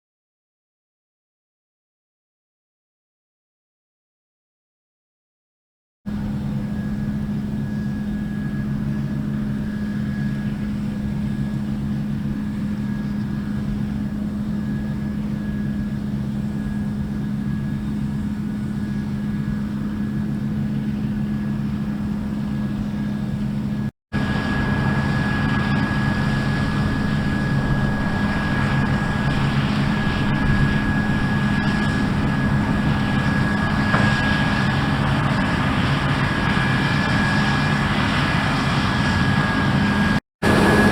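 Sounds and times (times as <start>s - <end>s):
harvest machinery engine drone: 6.1s - 40.9s
thin high whine: 24.2s - 34.8s, 39.2s - 40.9s.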